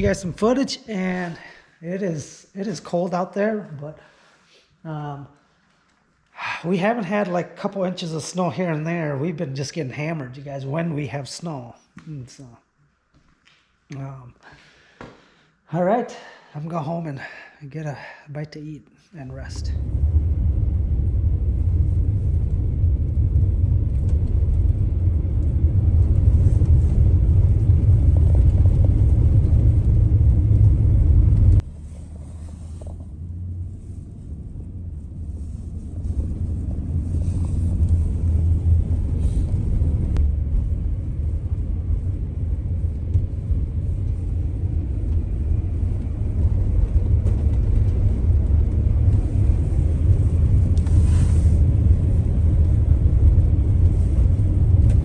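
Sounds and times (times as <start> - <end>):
vehicle engine and road noise: 19.5 - 55.0.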